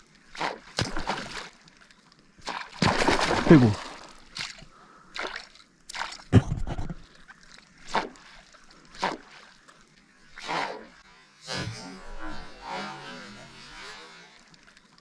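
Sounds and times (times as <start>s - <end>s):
water splashing at a kayak: 0.0s - 11.0s.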